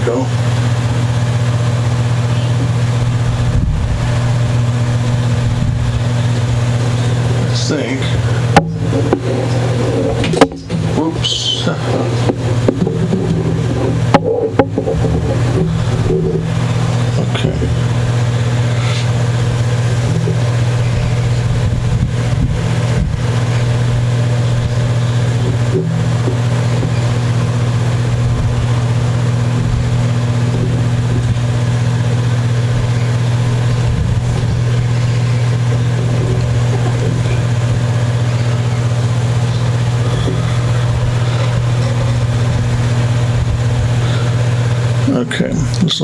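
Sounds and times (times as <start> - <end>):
low electrical hum: 0.0 - 46.0
faint knocks: 8.2 - 17.2, 17.8 - 44.4.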